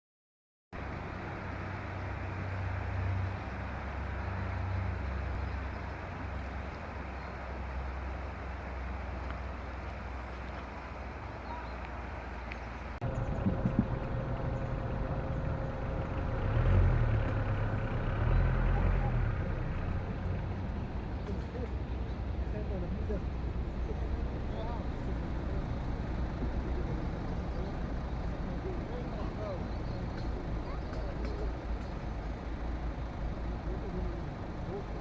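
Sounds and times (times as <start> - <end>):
bicycle rolling noise: 0.8 - 16.2
rushing wind: 0.8 - 16.7.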